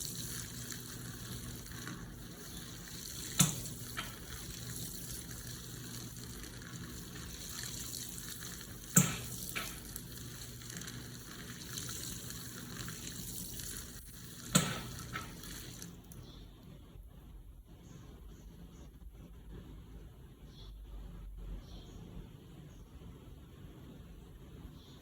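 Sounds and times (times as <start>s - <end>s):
washing machine filling with water: 0.0s - 16.2s.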